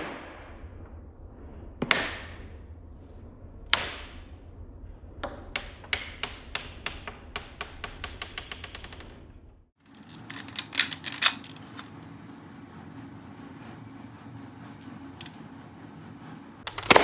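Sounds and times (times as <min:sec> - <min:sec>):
toy gun shots: 0:09.9 - 0:11.9
quick mechanical clicks: 0:09.9 - 0:16.6.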